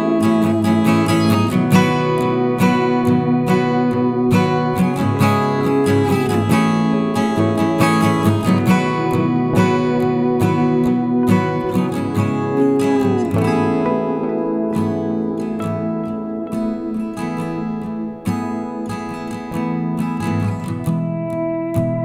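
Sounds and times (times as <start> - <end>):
strummed acoustic guitar: 0.0 - 22.0.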